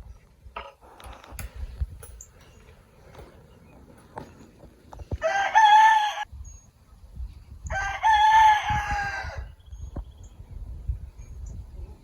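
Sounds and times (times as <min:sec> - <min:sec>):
rooster crowing: 0:05.2 - 0:06.3, 0:07.7 - 0:09.5.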